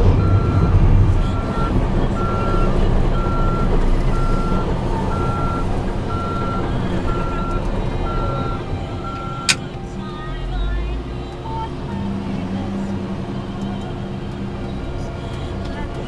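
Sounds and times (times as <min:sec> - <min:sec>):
diesel engine running under load: 0:00.0 - 0:16.0
backup alarm beeping: 0:00.2 - 0:09.7.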